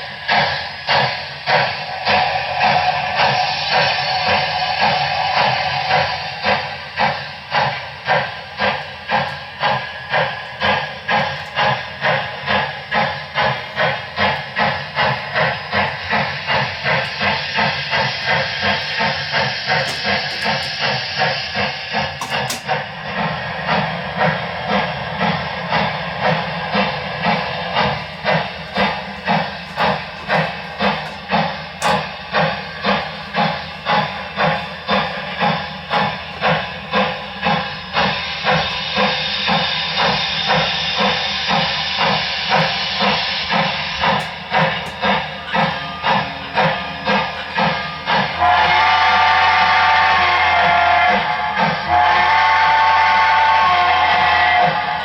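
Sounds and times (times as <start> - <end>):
model steam locomotive chuffing: 0.0 - 55.0.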